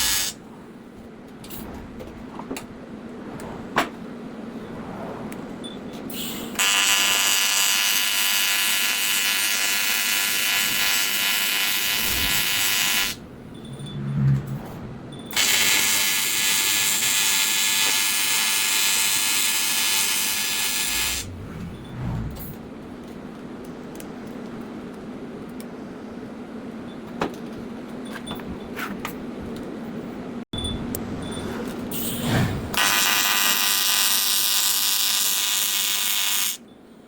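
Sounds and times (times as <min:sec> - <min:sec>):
welding arc buzzing: 0:00.0 - 0:00.4, 0:06.6 - 0:13.2, 0:15.4 - 0:21.3, 0:32.8 - 0:36.6.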